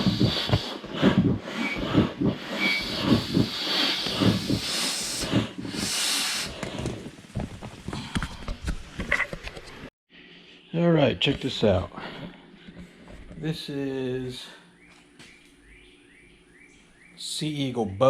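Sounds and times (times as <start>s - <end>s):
air pump hissing rhythmically: 0.0s - 7.5s.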